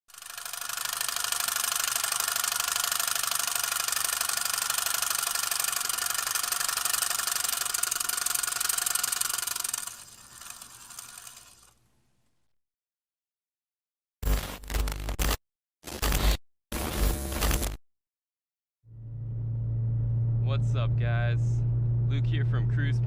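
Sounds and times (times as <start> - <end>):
fast mechanical ticking and rattling: 0.1 - 11.8.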